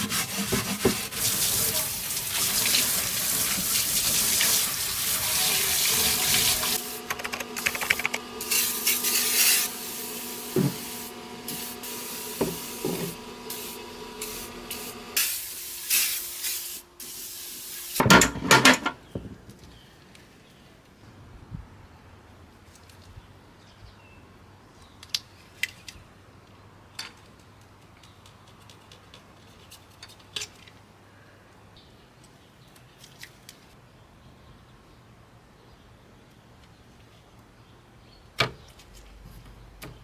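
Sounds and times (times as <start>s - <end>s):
liquid spraying hiss: 1.1s - 7.0s, 7.6s - 18.0s.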